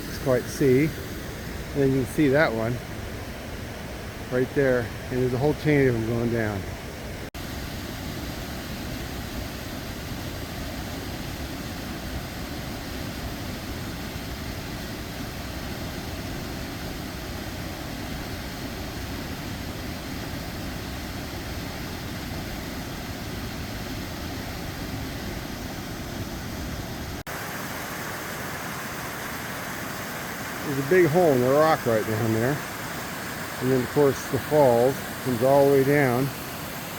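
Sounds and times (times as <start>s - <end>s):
roar of waterfalls: 26.4s - 36.9s.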